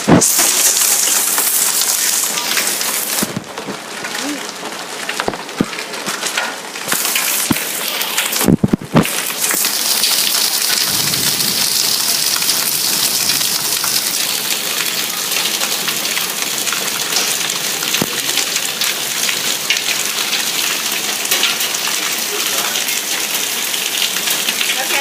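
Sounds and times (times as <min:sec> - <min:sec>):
hailstones clicking on hard surfaces: 0:00.0 - 0:25.0
heavy rain rushing: 0:00.0 - 0:25.0.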